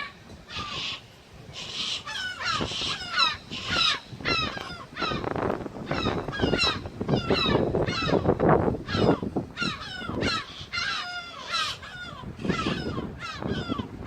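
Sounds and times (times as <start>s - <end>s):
gulls giving harsh alarm calls: 0.0s - 14.0s.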